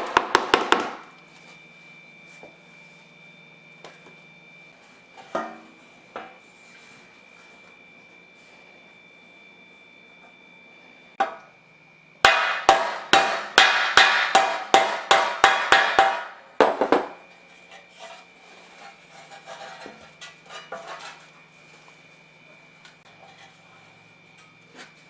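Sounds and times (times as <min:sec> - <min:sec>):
hammer strikes: 0:12.2 - 0:17.2.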